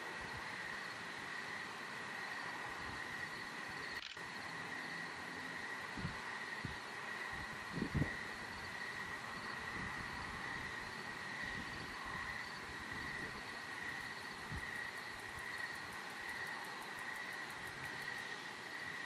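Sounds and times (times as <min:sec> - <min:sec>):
crickets chirping: 0:00.0 - 0:19.0
wind rumble on microphone: 0:05.8 - 0:17.9.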